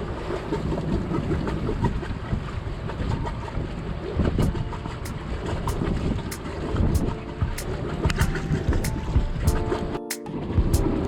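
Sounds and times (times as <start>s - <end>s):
water and waves: 0.0s - 11.0s
wind buffeting microphone: 0.5s - 9.8s
background music with beat: 4.4s - 11.0s.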